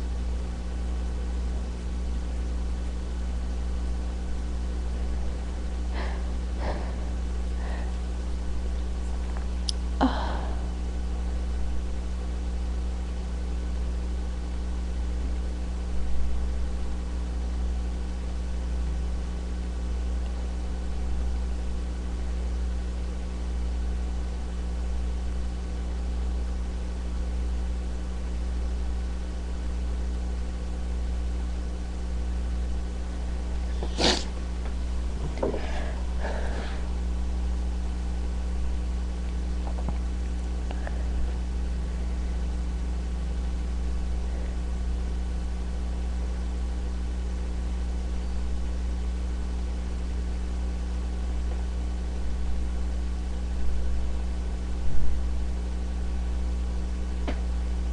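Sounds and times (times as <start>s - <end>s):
steady low hum: 0.0s - 57.9s
person sniffing and breathing: 5.8s - 8.2s, 33.7s - 34.4s, 35.5s - 36.9s
person nasal burst: 33.7s - 34.4s.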